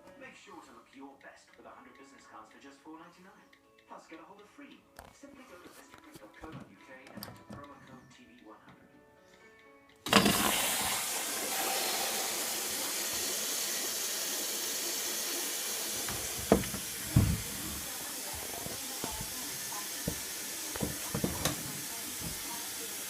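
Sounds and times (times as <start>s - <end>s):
water hissing into washing machine: 10.1s - 23.0s
water valve opening: 10.1s - 23.0s.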